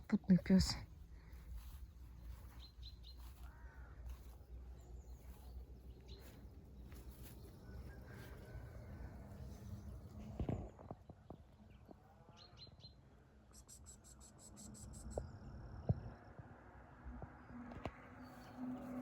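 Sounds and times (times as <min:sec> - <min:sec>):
steady low rumble: 0:00.0 - 0:10.8.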